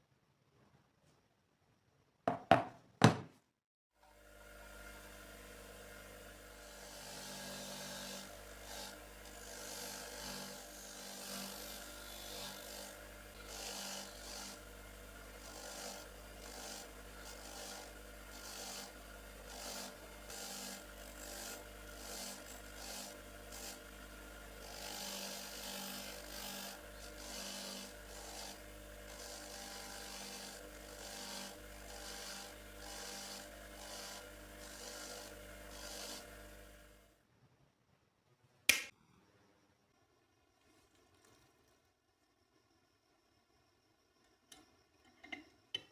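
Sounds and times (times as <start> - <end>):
filing strokes on metal: 6.6 - 14.7, 15.4 - 24.0, 24.6 - 36.6.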